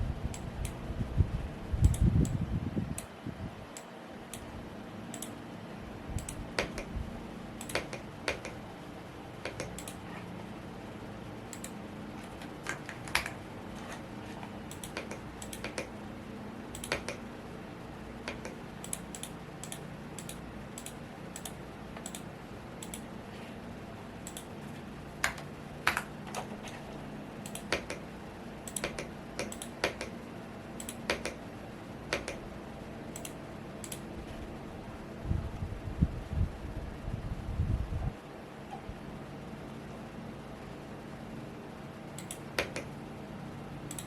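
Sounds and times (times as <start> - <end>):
fan hum: 0.0 - 44.0
mechanical keyboard typing: 7.6 - 8.6, 14.6 - 15.9, 16.8 - 17.2, 28.7 - 30.2.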